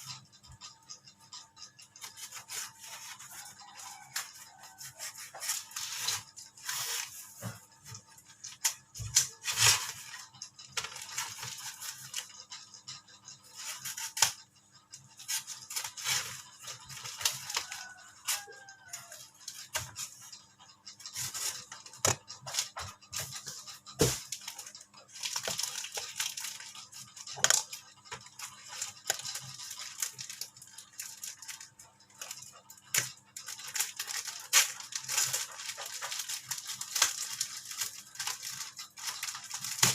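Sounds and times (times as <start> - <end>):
sharp clicks and knocks: 0.0 - 39.9
packaging rustling and tearing: 33.0 - 39.9.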